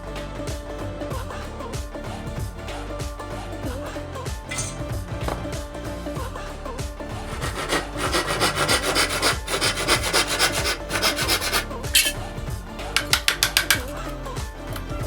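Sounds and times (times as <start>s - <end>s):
hand tool scraping wood: 7.2s - 12.3s.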